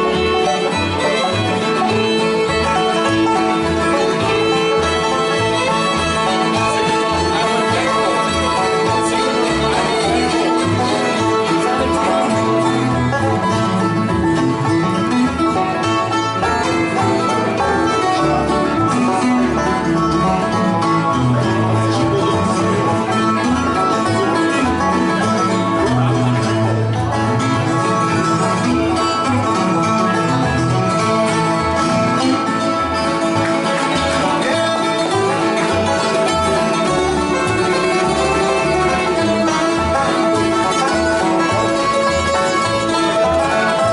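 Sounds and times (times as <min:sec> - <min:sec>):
banjo picking: 0:00.0 - 0:43.9
bluegrass band playing: 0:00.0 - 0:43.9
guitar picking: 0:00.0 - 0:43.9.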